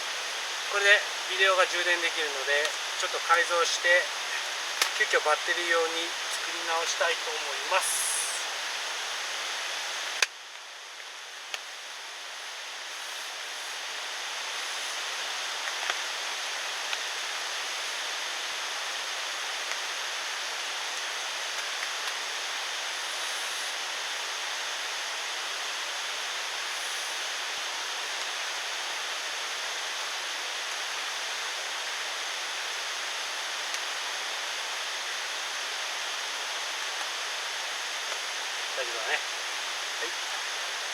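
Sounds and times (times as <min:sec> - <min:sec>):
rushing water: 0:00.0 - 0:40.9.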